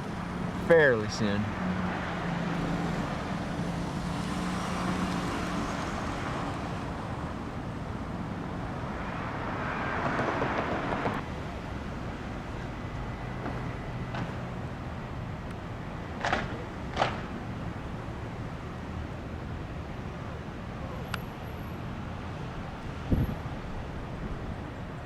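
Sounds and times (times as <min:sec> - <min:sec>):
vehicle passing: 0:00.0 - 0:07.3, 0:08.3 - 0:11.2
road traffic noise: 0:00.0 - 0:25.0.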